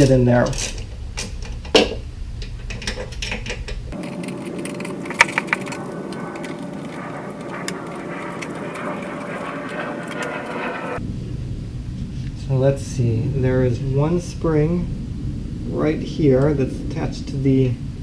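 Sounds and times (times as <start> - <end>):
steady hiss: 3.8 - 18.0
low hum: 3.9 - 18.0.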